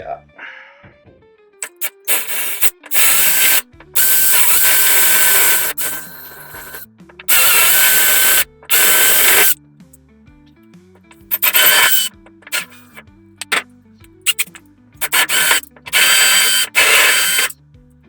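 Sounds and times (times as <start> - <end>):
power drill whining: 1.6 - 9.6, 11.1 - 13.6, 14.2 - 17.6.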